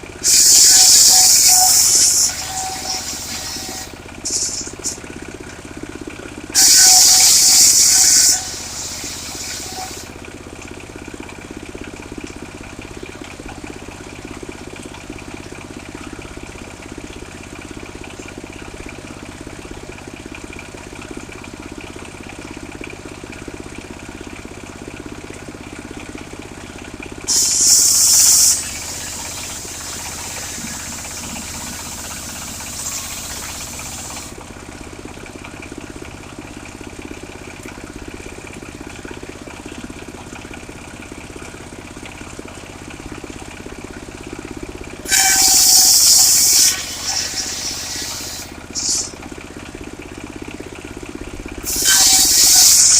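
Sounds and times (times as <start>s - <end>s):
circular saw cutting log: 0.0s - 5.1s, 6.5s - 10.2s, 27.3s - 34.4s, 45.0s - 49.2s, 51.6s - 52.9s
sawmill engine running: 0.0s - 52.9s.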